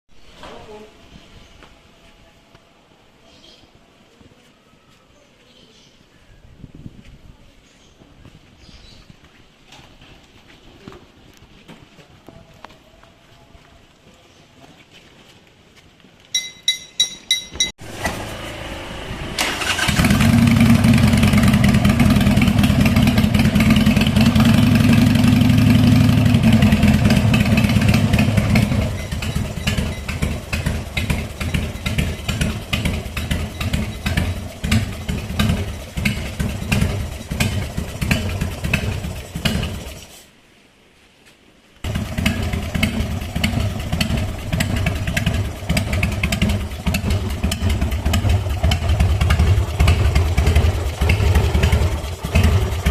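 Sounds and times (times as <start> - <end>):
motorcycle engine starting and idling: 17.4 - 40.2, 41.8 - 52.9.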